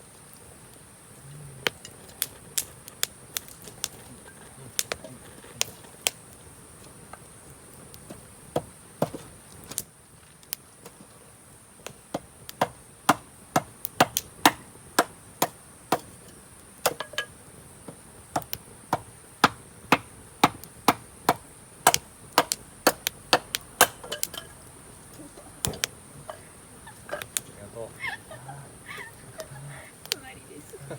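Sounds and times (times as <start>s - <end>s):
wood being chopped: 4.7s - 6.2s, 8.0s - 9.9s, 11.8s - 17.3s, 17.9s - 24.4s, 25.6s - 26.5s.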